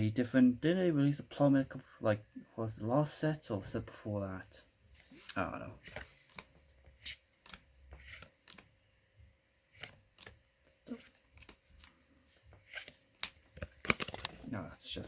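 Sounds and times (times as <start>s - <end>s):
trading cards flicking: 5.8s - 8.7s, 9.7s - 11.6s.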